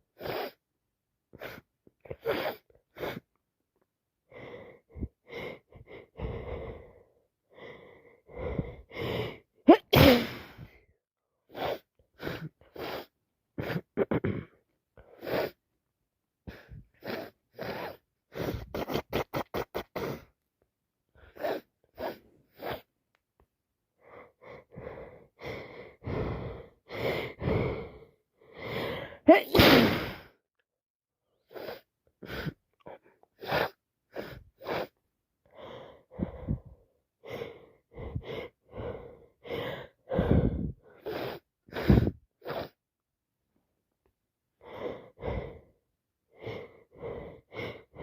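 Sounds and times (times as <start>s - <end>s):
woman sneezing: 9.7s - 10.6s, 29.3s - 30.2s
sharp in-breaths and sniffs: 21.3s - 22.9s, 39.6s - 42.8s.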